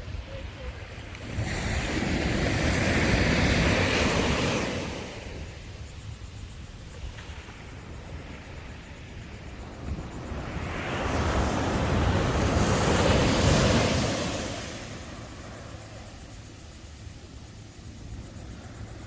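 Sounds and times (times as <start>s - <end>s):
wind on microphone: 0.0s - 19.0s
ocean surf washing onto beach: 9.8s - 16.6s.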